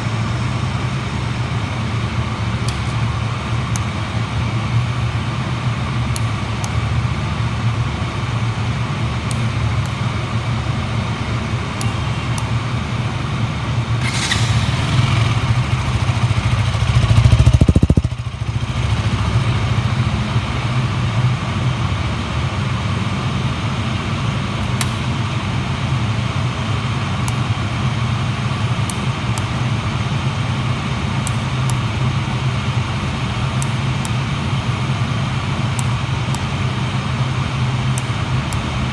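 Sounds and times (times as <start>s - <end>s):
motorcycle engine idling: 0.0s - 21.5s
engine revving: 14.0s - 19.9s.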